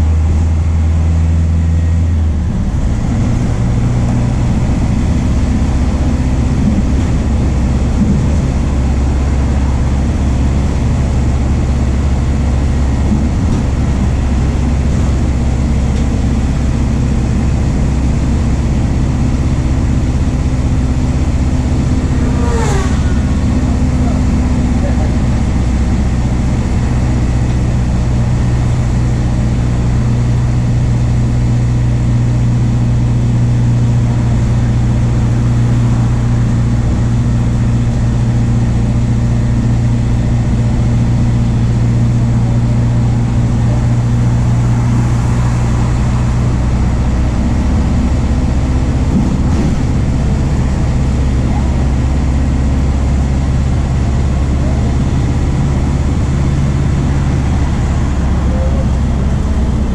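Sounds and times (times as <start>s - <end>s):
bus diesel engine running: 0.0s - 59.9s.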